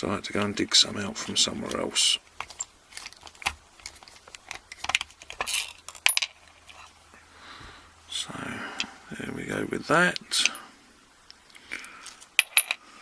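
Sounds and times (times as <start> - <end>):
small metallic clicks and clinks: 11.3 - 12.8.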